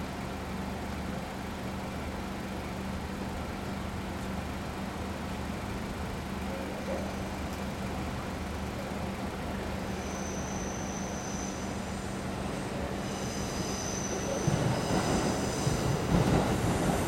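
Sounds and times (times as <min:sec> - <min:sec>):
vehicle engines idling: 0:00.0 - 0:10.0
traffic noise: 0:00.0 - 0:17.0
faint high squeal: 0:09.8 - 0:15.9.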